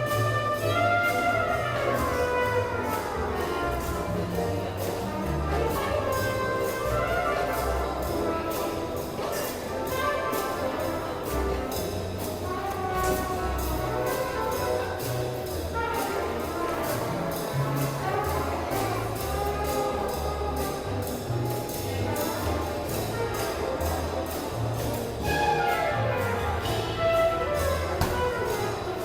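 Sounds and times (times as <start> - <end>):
orchestral music with brass: 0.0 - 29.0.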